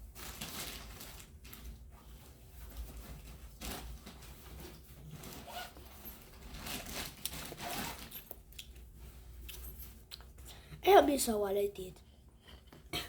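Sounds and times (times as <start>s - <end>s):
bag rustling: 0.0s - 10.1s
zipper being pulled: 5.1s - 8.3s.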